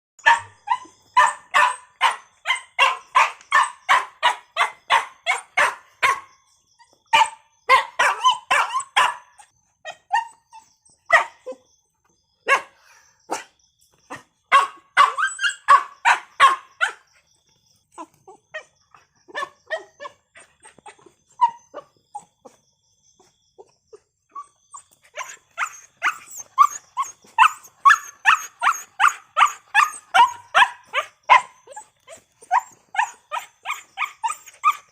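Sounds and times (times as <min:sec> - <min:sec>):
dog barking: 0:00.2 - 0:06.4, 0:07.1 - 0:09.5, 0:11.1 - 0:11.6, 0:12.4 - 0:17.0, 0:25.1 - 0:34.9.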